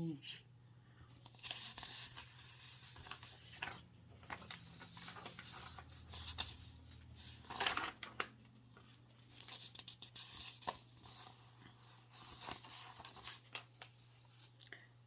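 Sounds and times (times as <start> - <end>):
rustling and scraping handling: 1.1 - 14.6.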